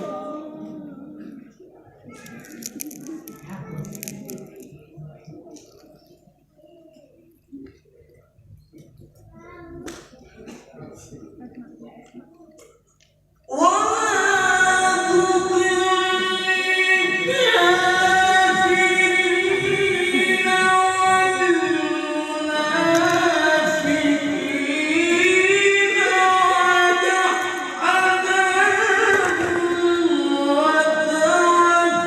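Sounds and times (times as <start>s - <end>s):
man reciting melodically: 13.5s - 32.0s.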